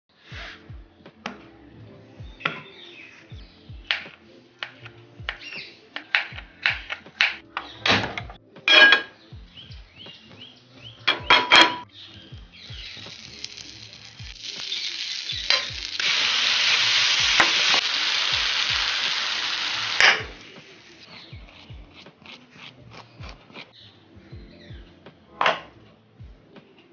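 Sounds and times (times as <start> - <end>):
kitchenware clinking: 6.0 - 9.2, 11.0 - 11.9, 20.0 - 20.4
food sizzling in frying pan: 12.5 - 21.2.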